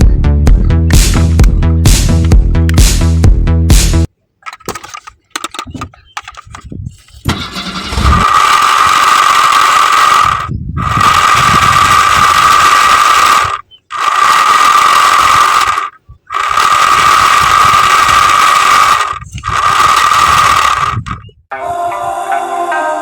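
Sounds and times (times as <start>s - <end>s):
small fan motor whining: 7.8s - 21.3s.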